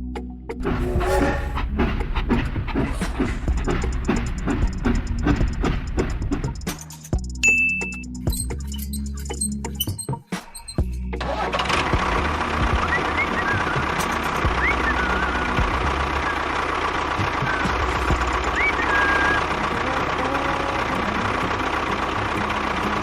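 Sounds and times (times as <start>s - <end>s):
small engine knocking rumble: 1.4s - 7.4s, 10.8s - 23.0s.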